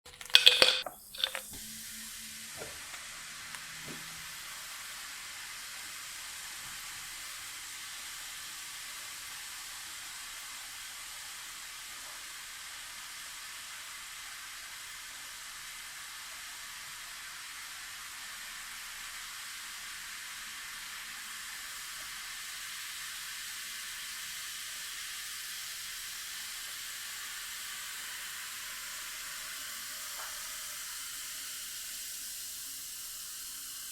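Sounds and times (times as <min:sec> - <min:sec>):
tablet fizzing: 0:00.1 - 0:01.8.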